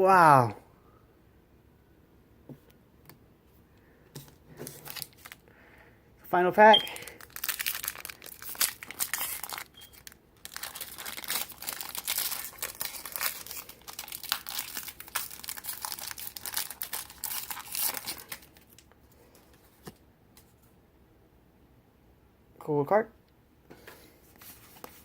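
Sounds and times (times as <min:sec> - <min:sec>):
foil wrapper crinkling and tearing: 0:04.6 - 0:05.4, 0:07.0 - 0:19.0.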